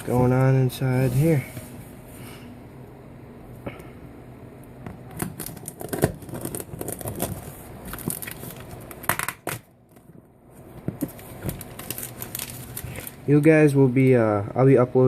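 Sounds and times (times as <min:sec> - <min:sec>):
cardboard box tearing and rustling: 0:05.4 - 0:08.6.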